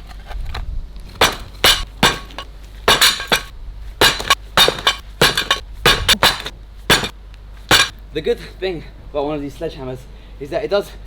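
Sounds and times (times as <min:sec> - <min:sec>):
bricks clinking and knocking: 0:01.2 - 0:07.1, 0:07.7 - 0:07.9
hammer hitting bricks: 0:01.2 - 0:08.0.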